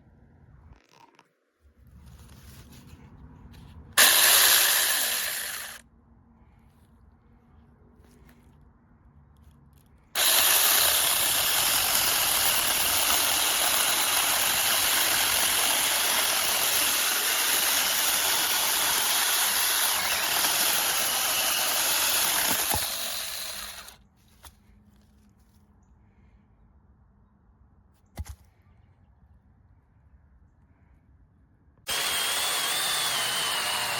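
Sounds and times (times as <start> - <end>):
electric chainsaw running: 4.0 - 5.8, 10.2 - 24.0, 31.9 - 33.9.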